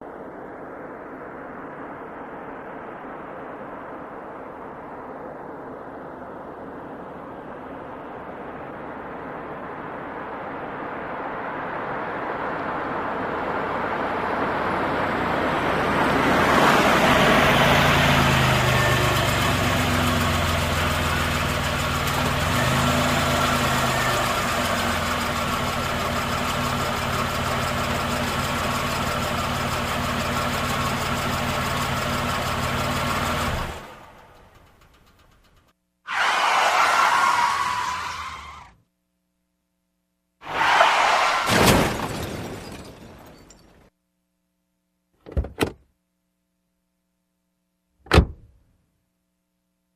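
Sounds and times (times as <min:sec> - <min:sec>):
car approaching: 0:00.2 - 0:38.8
car engine idling: 0:18.6 - 0:22.5, 0:23.2 - 0:35.8.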